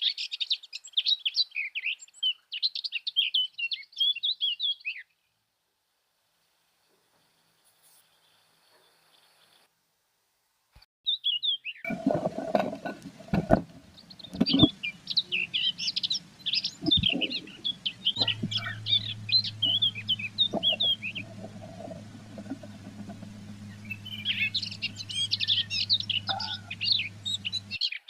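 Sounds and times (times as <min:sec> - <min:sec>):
birds twittering chirps: 0:00.0 - 0:05.1, 0:11.1 - 0:28.0
knocks and scrapes on wooden box: 0:11.9 - 0:13.8
steady low hum: 0:11.9 - 0:27.8.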